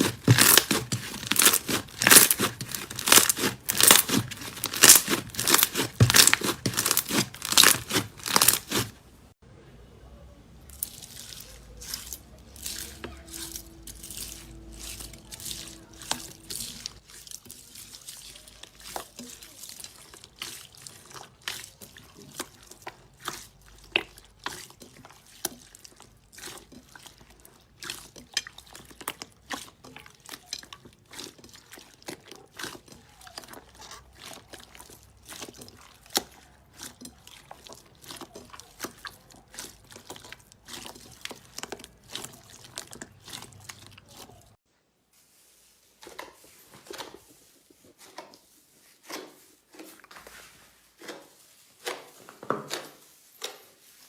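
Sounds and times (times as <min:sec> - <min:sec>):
slime squeezed by hand: 0:00.0 - 0:08.9.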